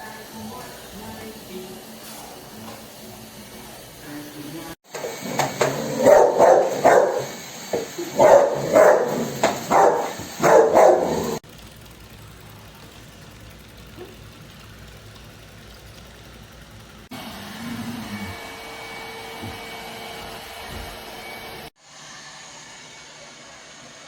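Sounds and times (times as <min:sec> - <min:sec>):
robot vacuum whirring: 0:04.9 - 0:11.4.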